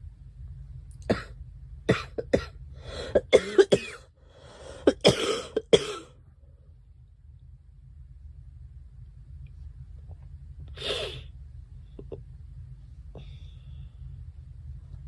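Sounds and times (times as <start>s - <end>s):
girl coughing: 1.9s - 4.0s, 4.8s - 6.1s.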